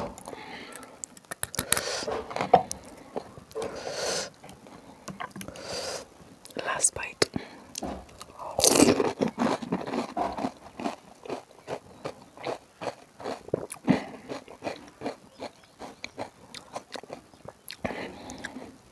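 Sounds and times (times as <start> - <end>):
crunchy chewing: 0.0 - 6.6, 7.3 - 18.9.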